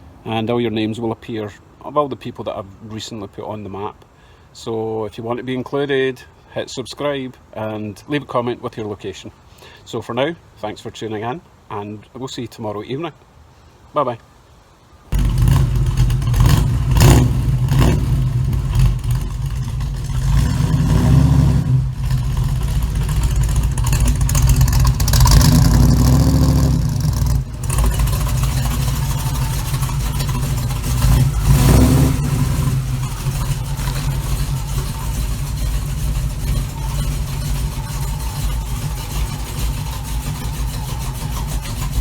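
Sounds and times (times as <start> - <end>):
car engine revving: 15.1 - 42.0.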